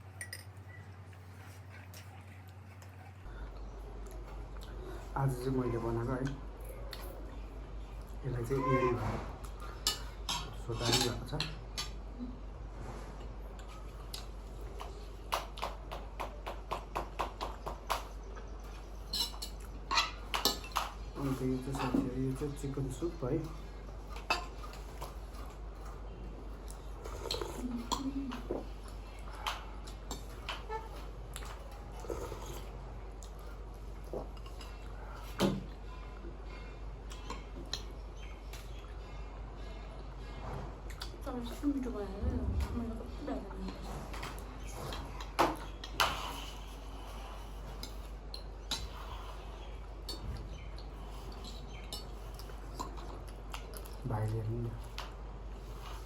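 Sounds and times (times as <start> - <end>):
cutlery clinking against dishes: 0.2 - 0.8, 9.6 - 12.0, 19.1 - 21.0.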